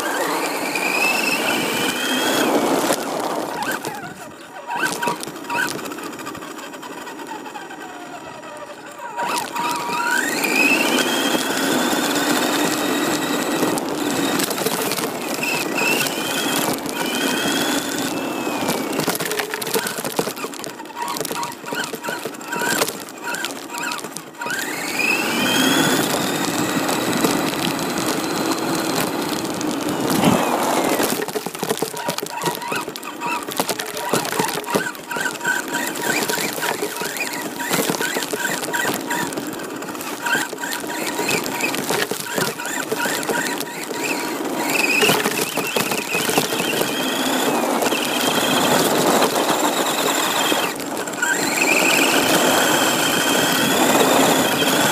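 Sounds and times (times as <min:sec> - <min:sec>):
rough rattling of moving car: 0:00.0 - 0:54.9
toy car motor whining: 0:00.0 - 0:54.9.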